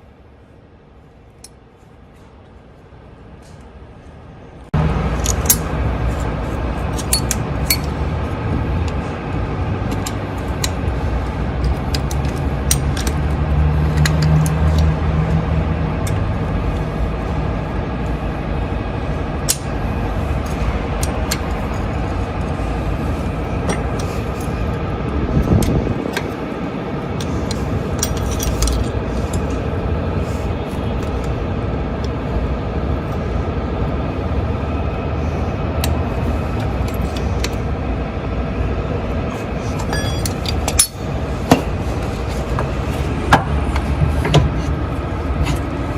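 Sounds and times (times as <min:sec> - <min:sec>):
vehicle engine rumble: 0:00.0 - 0:45.9
metallic clinks of tools: 0:39.9 - 0:41.0.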